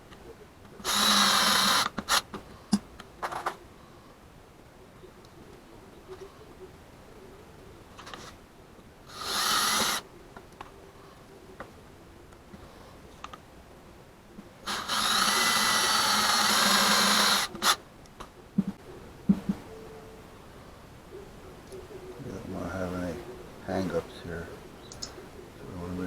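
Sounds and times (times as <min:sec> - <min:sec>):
power drill running: 0:00.8 - 0:02.2, 0:09.1 - 0:10.0, 0:14.7 - 0:17.8
clicks: 0:24.8 - 0:25.2.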